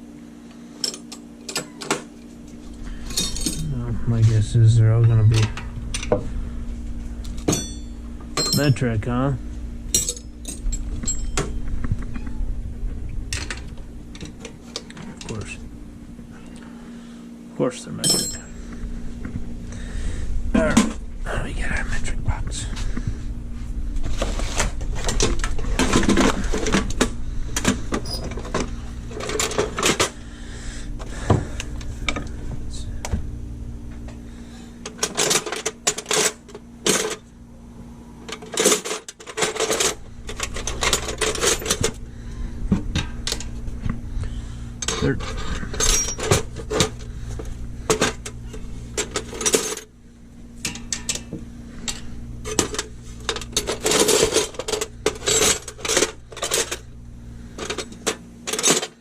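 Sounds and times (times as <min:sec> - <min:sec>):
low hum: 0:00.0 - 0:58.9
metal tools clinking in a box: 0:03.0 - 0:03.8, 0:07.4 - 0:08.8, 0:09.9 - 0:11.6, 0:18.0 - 0:18.6, 0:38.3 - 0:42.0, 0:44.8 - 0:47.0, 0:51.8 - 0:56.8.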